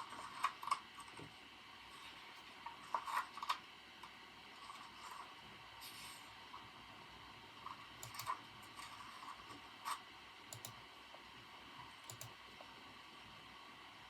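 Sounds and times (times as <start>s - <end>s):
keyboard typing: 8.0s - 8.4s, 10.5s - 10.8s, 12.1s - 12.4s.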